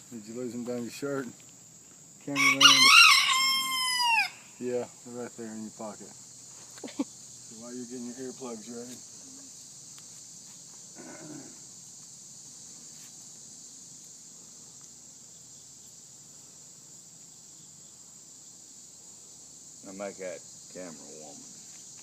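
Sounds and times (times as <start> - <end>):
insects chirping: 0.0 - 22.0.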